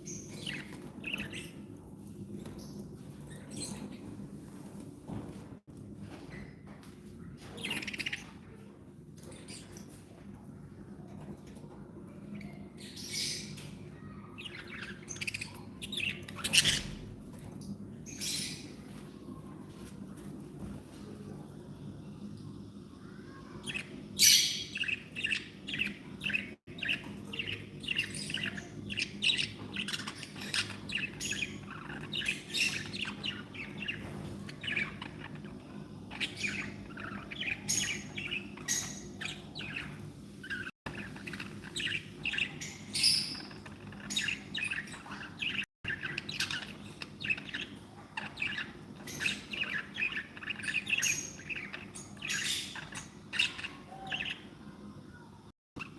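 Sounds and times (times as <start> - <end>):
budgerigars chirping: 0.0 - 1.7, 14.4 - 17.1, 23.7 - 54.4.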